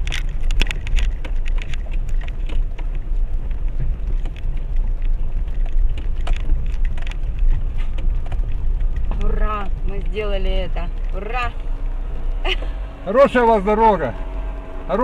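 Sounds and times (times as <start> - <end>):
car interior rumble: 0.0 - 15.0.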